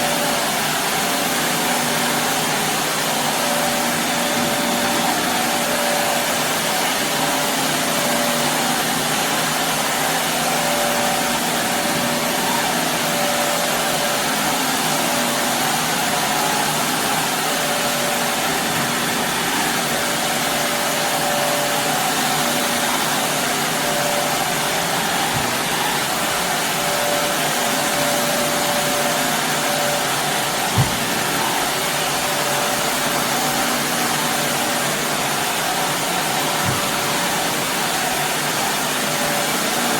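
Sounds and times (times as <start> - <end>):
vacuum cleaner running on carpet: 0.0 - 39.9
brief knock: 30.7 - 31.2.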